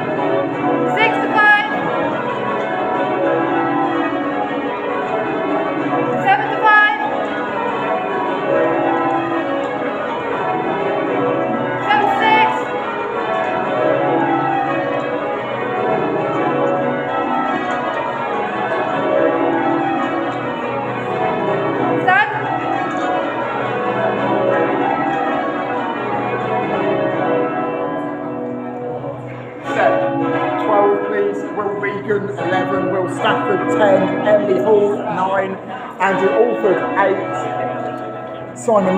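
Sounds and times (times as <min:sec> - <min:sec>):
church bells change ringing: 0:00.0 - 0:38.9.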